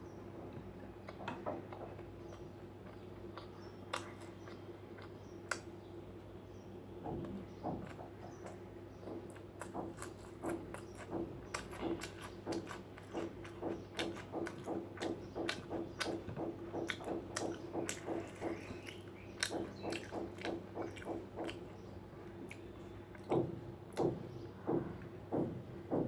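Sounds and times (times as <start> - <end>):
person chewing food: 1.1 - 5.8, 7.1 - 24.2.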